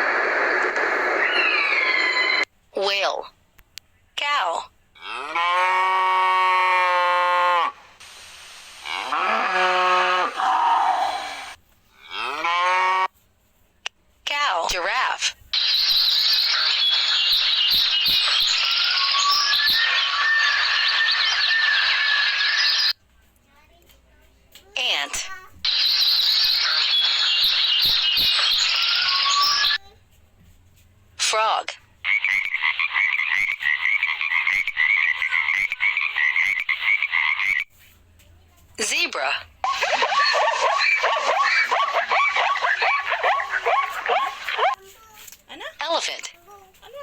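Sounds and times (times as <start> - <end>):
whistled bird notes: 1.2 - 2.4, 15.6 - 23.0, 25.7 - 29.8
frogs croaking rapidly: 15.6 - 23.0, 25.7 - 29.8, 32.1 - 37.7, 39.7 - 44.8
small birds chirping: 15.6 - 23.0, 25.7 - 29.8, 39.7 - 44.8.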